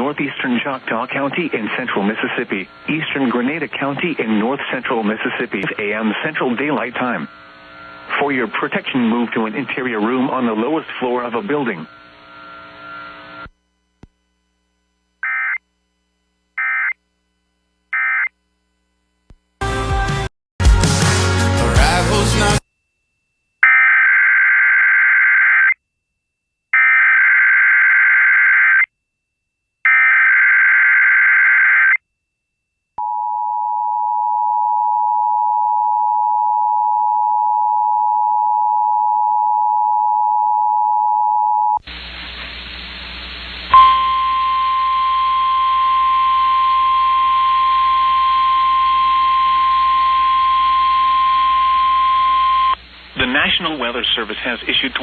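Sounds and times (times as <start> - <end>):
radio hiss and hum: 0.0 - 19.5, 41.8 - 55.0
two-tone attention signal: 43.8 - 52.8.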